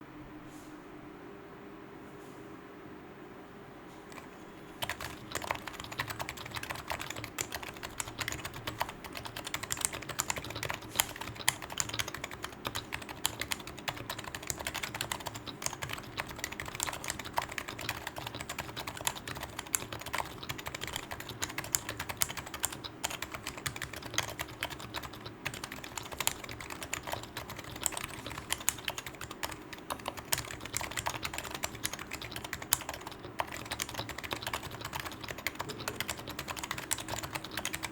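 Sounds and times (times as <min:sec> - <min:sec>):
keyboard typing: 0:04.1 - 0:37.9.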